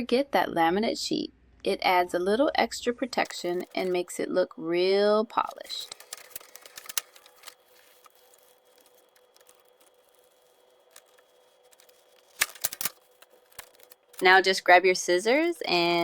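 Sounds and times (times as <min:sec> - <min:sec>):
sharp crackles and clicks: 0:03.2 - 0:04.0, 0:05.4 - 0:16.0
soft clicks and rustles of sheets: 0:05.5 - 0:16.0.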